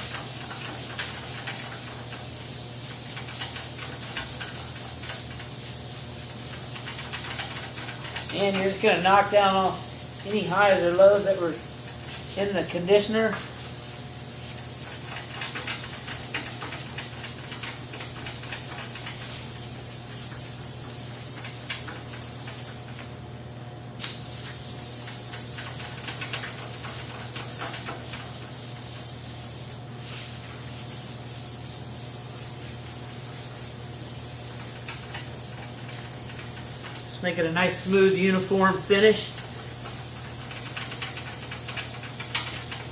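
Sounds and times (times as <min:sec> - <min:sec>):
sandpaper rubbing by hand: 0:24.3 - 0:42.9.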